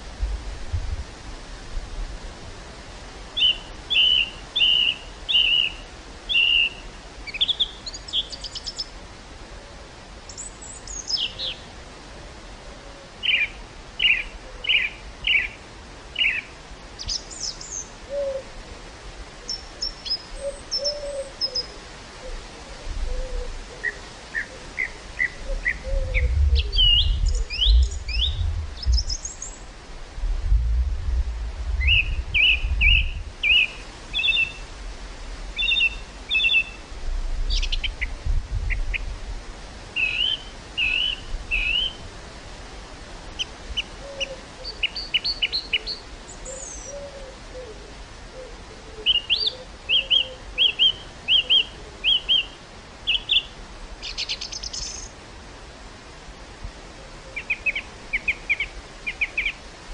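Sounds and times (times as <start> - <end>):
wind gusts on microphone: 0.0 - 3.9, 22.0 - 44.1
wind hiss: 0.0 - 59.9
songbirds chirping: 3.3 - 9.2, 9.8 - 30.1, 31.3 - 39.1, 39.9 - 42.1, 43.2 - 47.8, 48.4 - 55.2, 57.1 - 59.8.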